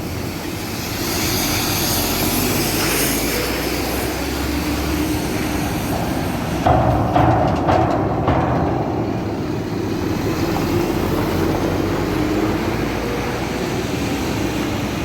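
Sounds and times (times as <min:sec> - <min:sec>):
truck diesel engine rumbling: 0:03.7 - 0:15.0.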